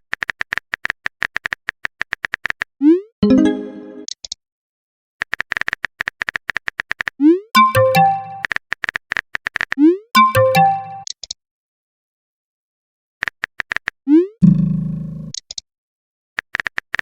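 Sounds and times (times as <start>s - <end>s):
rapid keyboard tap clicks: 0.1s - 2.7s, 13.2s - 13.9s, 16.4s - 17.0s
electronic notification chime: 3.2s - 4.1s, 7.6s - 8.4s, 10.2s - 11.0s.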